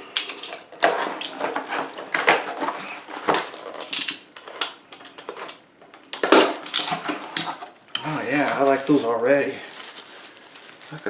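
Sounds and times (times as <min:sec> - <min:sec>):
metal knives and shears clinking: 0:03.3 - 0:05.7.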